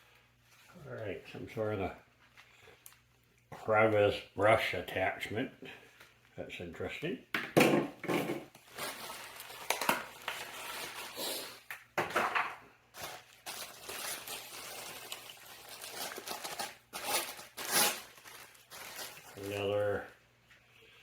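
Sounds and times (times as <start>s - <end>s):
plastic and cardboard packaging rustling: 8.4s - 20.2s.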